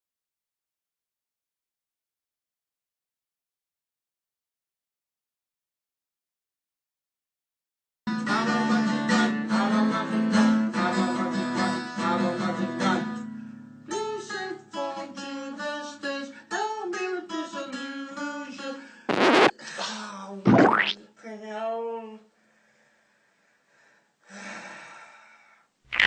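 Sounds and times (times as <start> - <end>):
loud burst of noise: 19.1 - 19.5.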